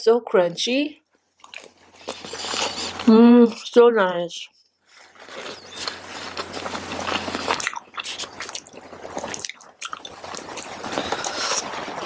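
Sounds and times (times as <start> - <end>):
crunchy chewing: 1.4 - 3.1, 4.9 - 12.0.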